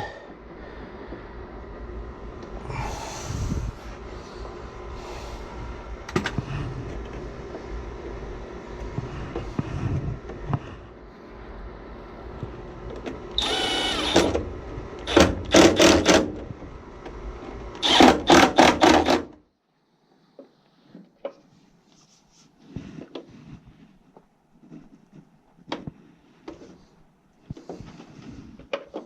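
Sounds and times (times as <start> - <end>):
steady background hum: 0.0 - 29.0
power drill whining: 13.3 - 16.4, 17.7 - 19.3.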